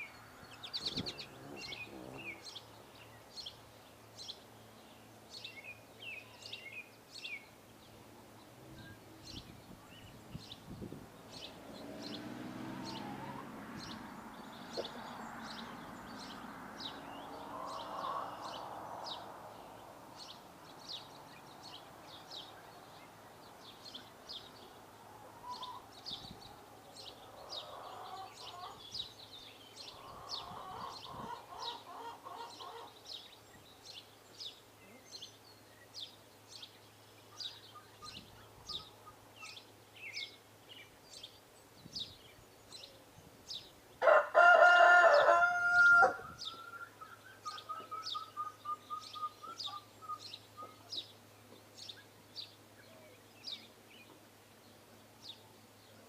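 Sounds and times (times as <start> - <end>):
small birds chirping: 0.0 - 44.2, 44.8 - 56.0
longer lower bird calls: 0.0 - 56.0.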